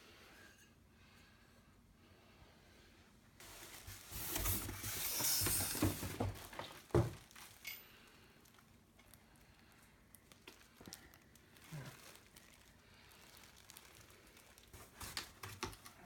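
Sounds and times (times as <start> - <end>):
cardboard and wrapping rustling: 3.4 - 16.0.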